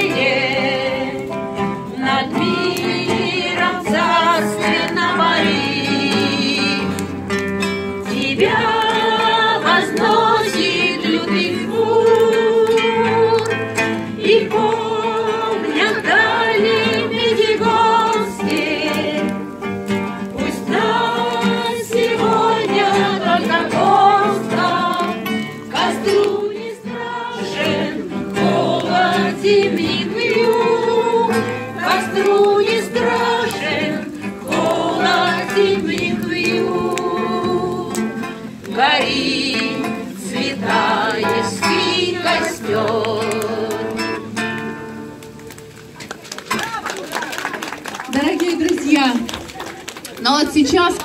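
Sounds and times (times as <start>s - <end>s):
group of people singing: 0.0s - 7.2s, 7.8s - 44.6s
acoustic guitar: 0.0s - 51.0s.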